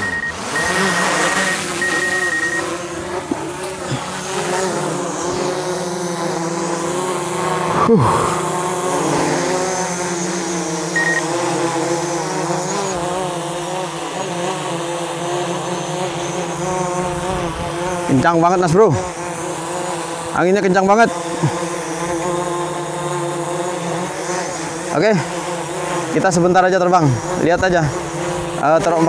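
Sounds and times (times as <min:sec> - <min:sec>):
short electronic beeps: 0:00.0 - 0:02.7, 0:11.0 - 0:11.2
drone propellers whining: 0:00.0 - 0:13.3
gusty wind: 0:16.9 - 0:17.9.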